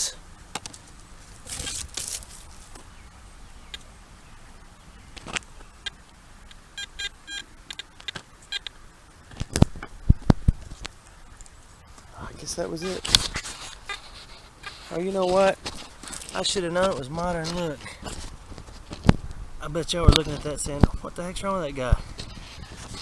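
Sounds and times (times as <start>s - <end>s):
metal detector beeping: 6.8s - 8.8s.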